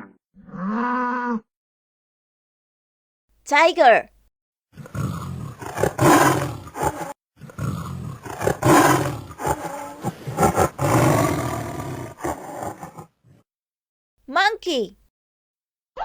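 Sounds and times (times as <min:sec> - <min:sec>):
tiger roaring and growling: 0:00.0 - 0:01.4, 0:04.7 - 0:13.4.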